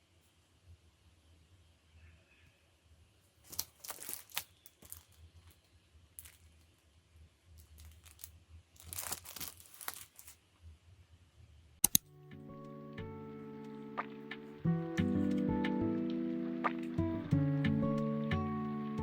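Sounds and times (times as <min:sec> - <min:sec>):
packaging tearing and crinkling: 0:03.4 - 0:05.2, 0:07.6 - 0:10.4.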